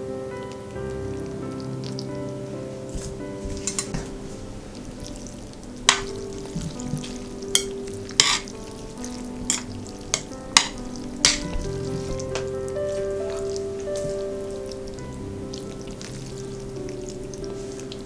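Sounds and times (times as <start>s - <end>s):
background music: 0.0s - 18.0s
utensils clicking against dishes: 3.6s - 4.0s, 7.5s - 8.6s, 9.4s - 12.5s.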